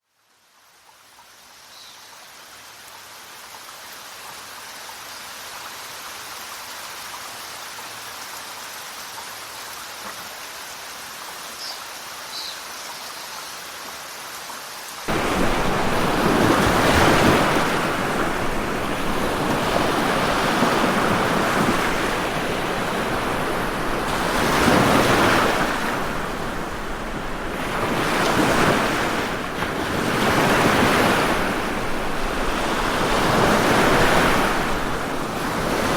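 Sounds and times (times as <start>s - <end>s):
ocean surf waves breaking: 15.1s - 35.9s.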